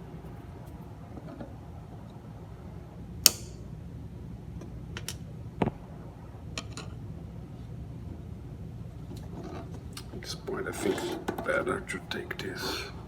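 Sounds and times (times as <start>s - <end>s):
steady low hum: 0.0s - 13.0s
tools clicking: 3.2s - 3.6s.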